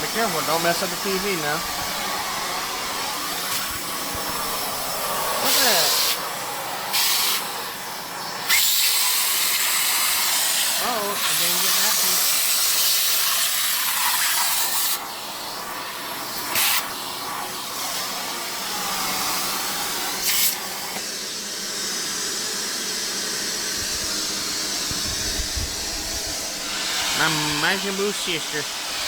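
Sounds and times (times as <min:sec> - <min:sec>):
vacuum cleaner running: 0:00.0 - 0:29.0
rushes of air: 0:23.8 - 0:27.6.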